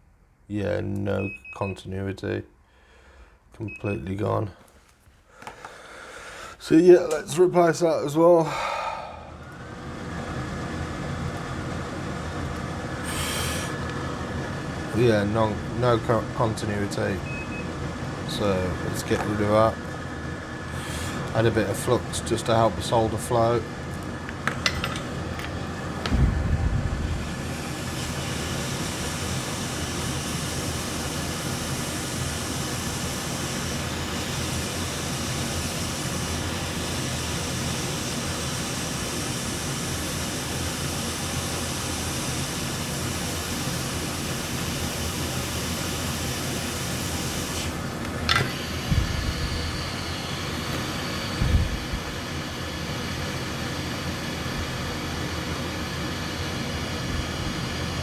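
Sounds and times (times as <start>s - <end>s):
hot air station blowing: 5.4s - 58.0s
low thumps: 26.1s - 27.2s.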